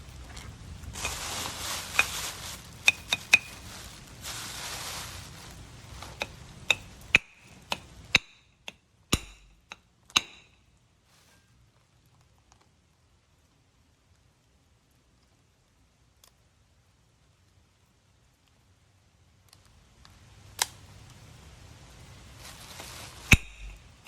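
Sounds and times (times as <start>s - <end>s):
knife rustling or scraping: 0.3s - 7.6s, 11.1s - 11.6s, 22.4s - 24.0s.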